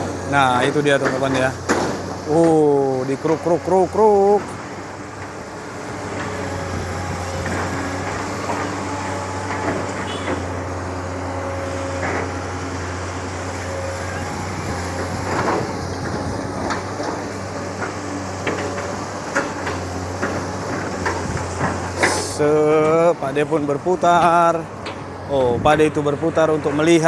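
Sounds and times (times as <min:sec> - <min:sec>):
excavator diesel engine running: 0:00.0 - 0:27.0
hydraulic whine: 0:00.0 - 0:27.0.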